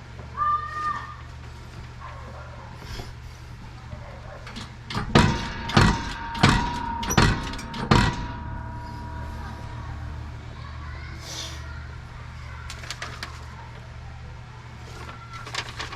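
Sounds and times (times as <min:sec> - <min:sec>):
hammer blows on metal: 0:04.9 - 0:10.6.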